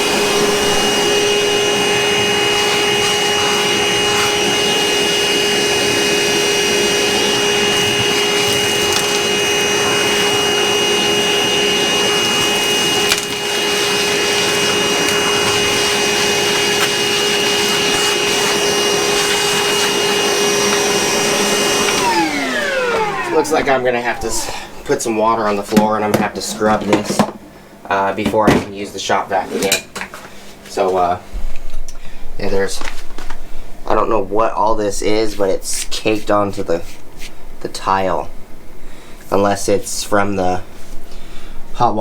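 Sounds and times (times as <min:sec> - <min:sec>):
shop vacuum running: 0:00.0 - 0:27.4.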